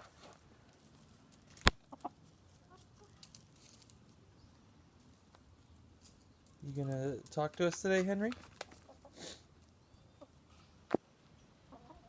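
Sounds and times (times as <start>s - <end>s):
chickens clucking: 1.8s - 3.4s, 8.6s - 12.0s.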